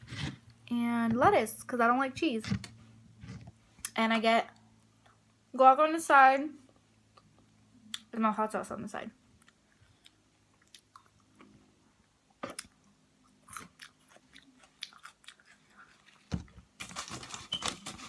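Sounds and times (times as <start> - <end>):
person chewing: 9.4 - 11.5, 12.5 - 16.3.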